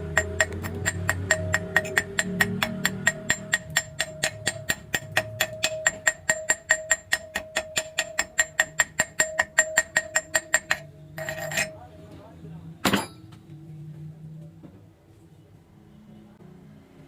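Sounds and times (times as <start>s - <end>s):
fast ticking beat: 0.0s - 10.9s.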